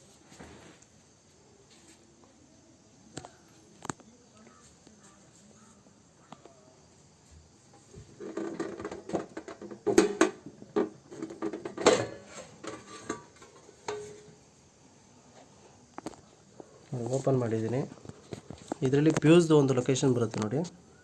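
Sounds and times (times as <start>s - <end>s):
cabinet casing knocks and rattles: 8.3s - 12.2s.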